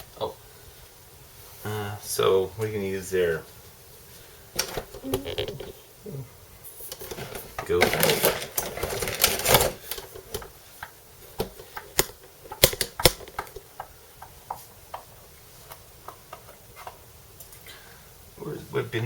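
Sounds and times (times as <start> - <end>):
scraping rustle: 6.7 - 9.9.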